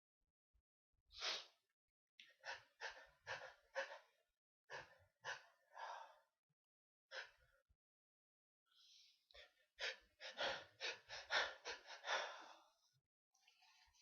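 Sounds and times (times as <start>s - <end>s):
person gasping breaths: 2.4s - 6.3s, 8.8s - 12.9s.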